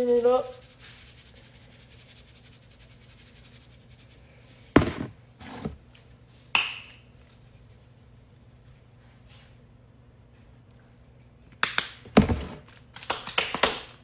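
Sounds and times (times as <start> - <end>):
bottle knocking on counter: 4.8 - 5.1.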